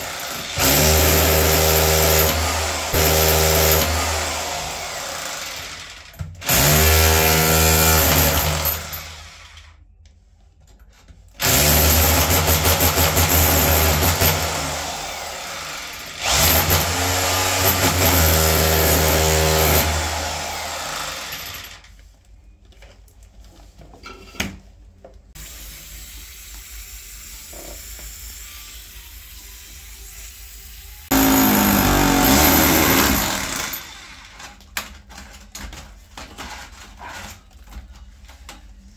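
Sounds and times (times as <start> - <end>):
power tool bursts: 31.1 - 34.4.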